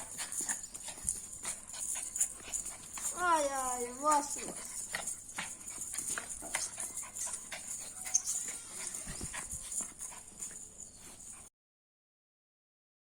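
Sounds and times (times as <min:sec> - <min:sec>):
dog whimpering: 0:07.6 - 0:09.3.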